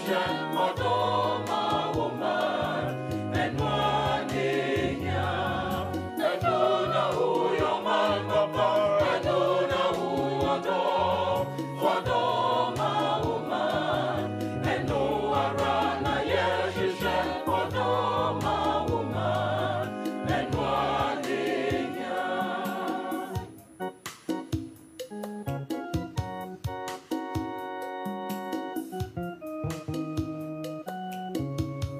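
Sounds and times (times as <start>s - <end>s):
gospel song with voices singing: 0.0s - 24.5s.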